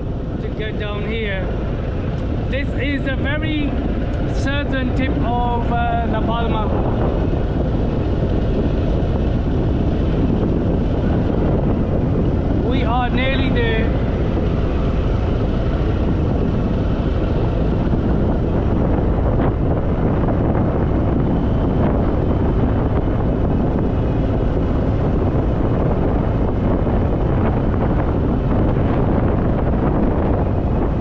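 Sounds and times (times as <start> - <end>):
motorcycle engine running: 0.0 - 31.0
wind rush on microphone: 0.0 - 31.0.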